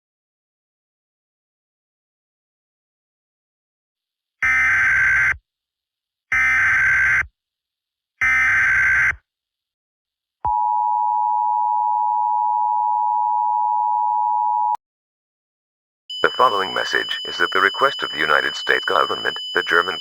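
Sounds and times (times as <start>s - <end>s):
two-tone attention signal: 16.1s - 20.0s
digital data header bursts: 16.2s - 20.0s.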